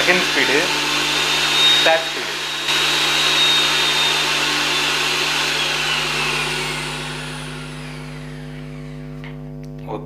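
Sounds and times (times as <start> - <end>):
mixer grinder motor whine: 0.0 - 9.5.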